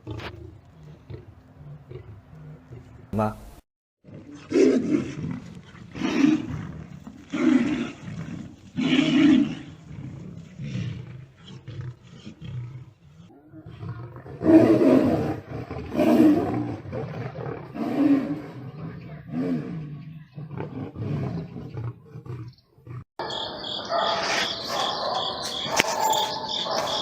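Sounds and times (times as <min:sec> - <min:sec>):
big cats roaring: 0:04.0 - 0:25.2.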